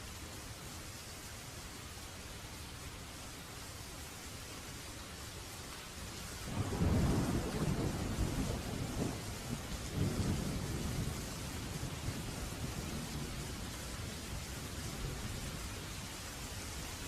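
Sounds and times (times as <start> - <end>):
steady rain: 0.0 - 17.0
thunder rumbling: 6.5 - 15.8.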